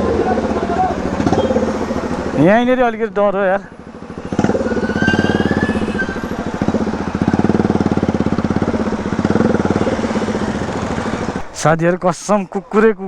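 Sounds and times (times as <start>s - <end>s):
loud motorcycle exhaust: 3.9s - 10.3s.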